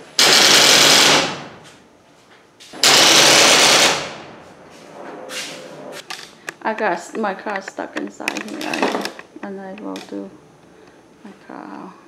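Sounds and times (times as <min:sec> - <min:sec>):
garage door opener rattling buzz: 0:00.0 - 0:01.7, 0:02.8 - 0:04.4, 0:06.0 - 0:10.2.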